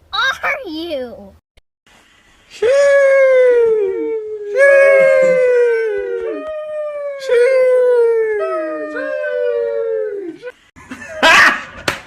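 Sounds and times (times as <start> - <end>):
dog howling: 2.8 - 10.6.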